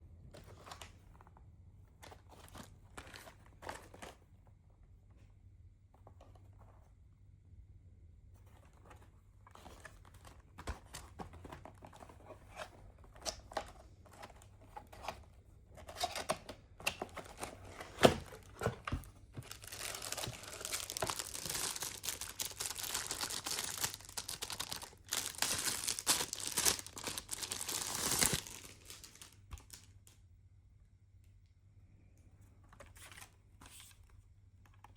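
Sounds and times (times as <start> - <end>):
packaging rustling and clicking: 8.8 - 29.9
packaging tearing and crinkling: 19.4 - 29.9.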